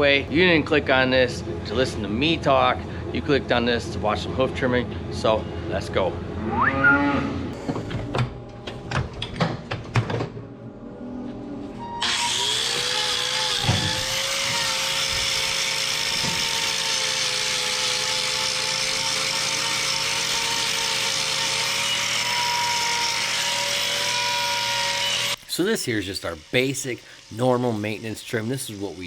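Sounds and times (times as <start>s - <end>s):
grinder whining and grinding: 11.3s - 29.0s.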